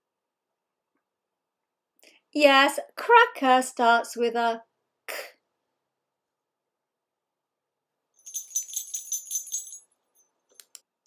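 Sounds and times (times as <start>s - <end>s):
sleigh bells jingling: 8.2s - 10.3s.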